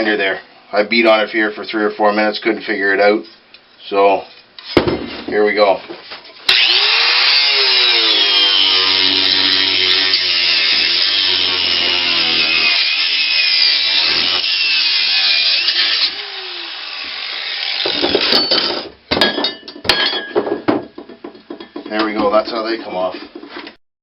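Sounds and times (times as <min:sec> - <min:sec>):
angle grinder cutting metal: 0:06.5 - 0:18.4
metal knocks and clanks: 0:17.8 - 0:22.5.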